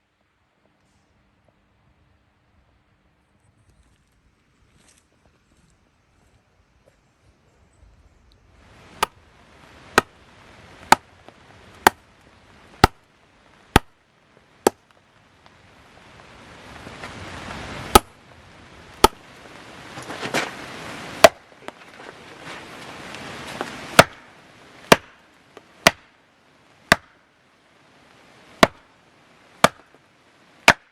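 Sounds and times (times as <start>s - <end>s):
axe chopping firewood: 10.0s - 10.2s, 10.8s - 11.1s, 11.8s - 12.0s, 12.8s - 13.1s, 13.7s - 14.0s, 14.6s - 15.0s, 17.9s - 18.2s, 19.0s - 19.3s, 21.2s - 21.4s, 23.6s - 24.3s, 24.9s - 25.2s, 25.8s - 26.1s, 26.9s - 27.2s, 28.6s - 28.8s, 29.6s - 30.0s, 30.6s - 30.9s.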